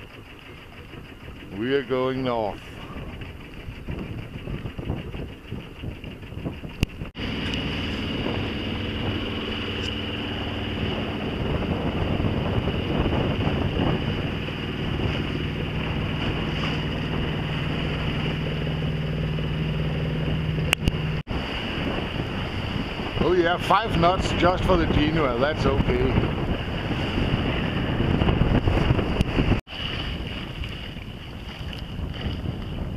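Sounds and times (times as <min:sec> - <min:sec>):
wind buffeting microphone: 0:00.0 - 0:32.9.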